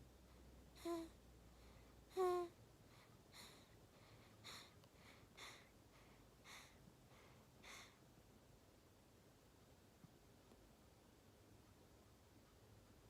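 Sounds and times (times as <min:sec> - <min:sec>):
baby snoring: 0:00.8 - 0:01.1, 0:02.1 - 0:02.5.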